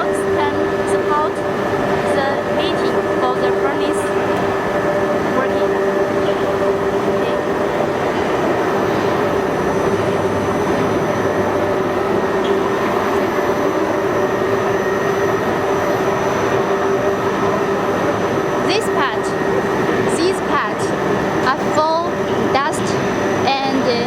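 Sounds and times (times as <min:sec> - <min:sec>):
held whining tones: 0:00.0 - 0:24.0
loud steady mechanical drone: 0:00.0 - 0:24.0.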